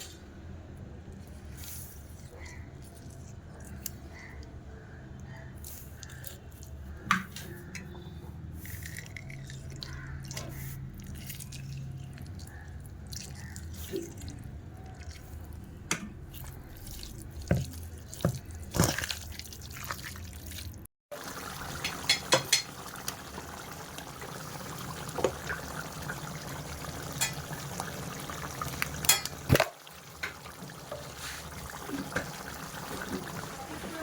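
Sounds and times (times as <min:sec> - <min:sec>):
liquid being handled: 0:08.5 - 0:34.0.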